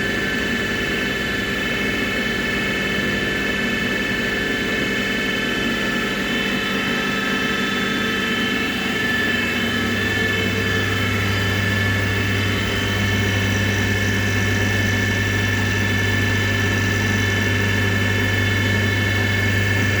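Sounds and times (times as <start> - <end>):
milling machine whine: 0.0 - 20.0
low hum: 8.3 - 20.0.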